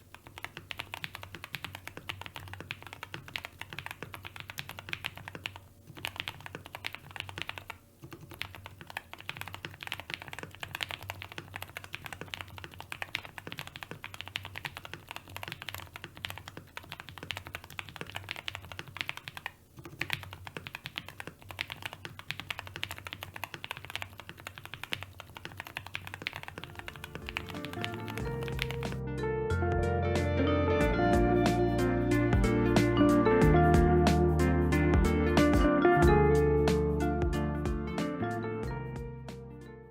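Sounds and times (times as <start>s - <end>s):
fast typing on mechanical keyboard: 0.0s - 29.0s.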